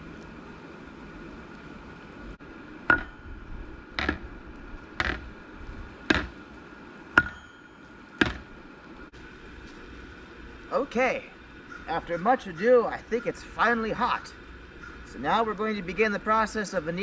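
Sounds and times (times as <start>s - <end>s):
hammer blows on metal: 2.9s - 3.4s, 7.2s - 8.5s.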